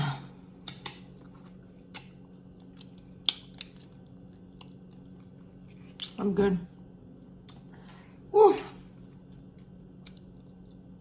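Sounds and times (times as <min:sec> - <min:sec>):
steady low hum: 0:00.0 - 0:11.0
mouth clicks and smacks chewing: 0:00.5 - 0:06.2, 0:09.4 - 0:10.9.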